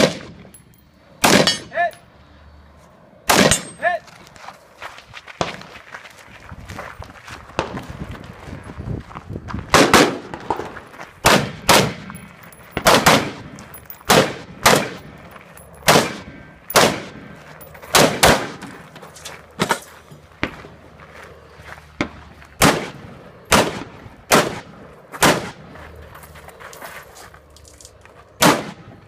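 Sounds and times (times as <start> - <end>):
pistol shots: 0.0 - 0.4, 1.2 - 1.7, 3.3 - 3.7, 9.7 - 12.1, 12.7 - 15.0, 15.8 - 17.3, 17.9 - 18.7, 22.6 - 25.6, 28.4 - 28.9.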